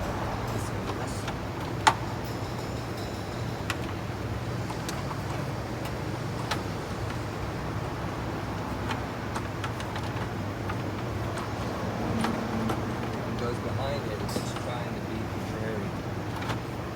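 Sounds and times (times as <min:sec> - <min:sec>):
steady low hum: 0:00.0 - 0:07.6.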